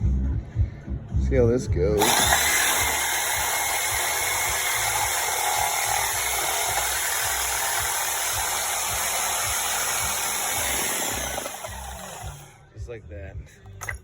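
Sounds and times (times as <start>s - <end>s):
reciprocating saw cutting nails: 2.0s - 12.5s.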